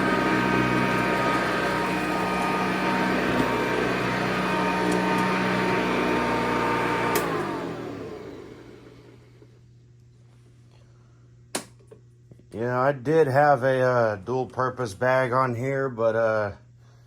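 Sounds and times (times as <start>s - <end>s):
upright vacuum cleaner running: 0.0s - 9.6s
vacuum switch click: 7.1s - 7.4s.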